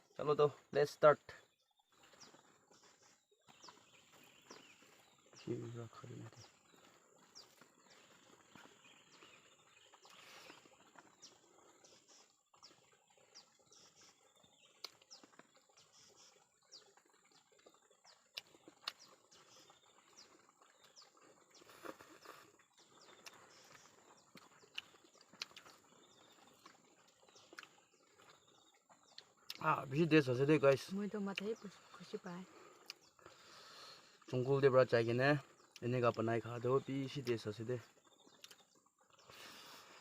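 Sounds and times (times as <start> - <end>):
faint chirps: 0.0 - 16.9.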